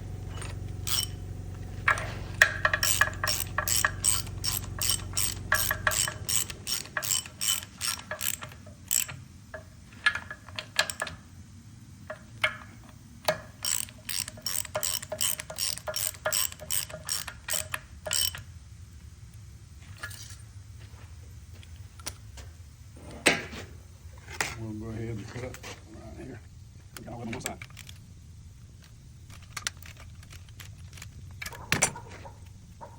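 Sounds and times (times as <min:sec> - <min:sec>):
ratchet wrench clicking: 0:00.3 - 0:11.2, 0:12.1 - 0:18.5, 0:27.0 - 0:28.0.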